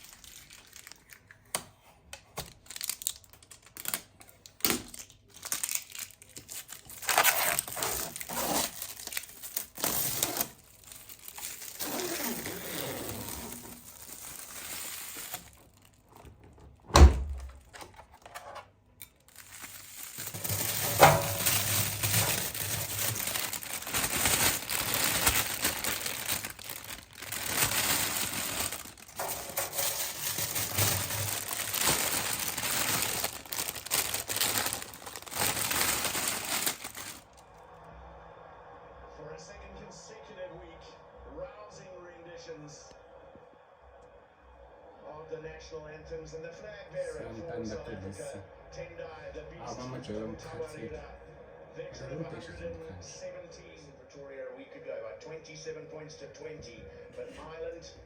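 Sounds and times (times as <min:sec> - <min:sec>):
rustling and crinkling handling noise: 0:00.0 - 0:37.4.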